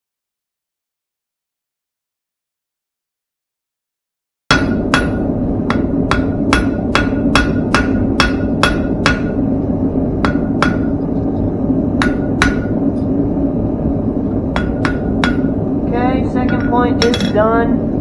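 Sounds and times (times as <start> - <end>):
hammer ringing on steel: 4.5 - 9.4, 10.2 - 11.0, 12.0 - 12.8, 14.6 - 15.6, 16.4 - 17.5
low steady rush: 4.5 - 18.0.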